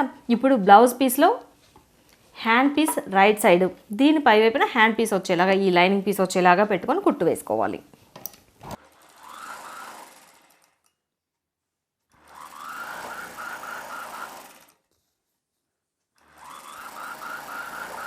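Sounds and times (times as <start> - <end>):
sewing machine stitching: 8.6 - 10.9, 12.1 - 14.9, 16.1 - 18.0.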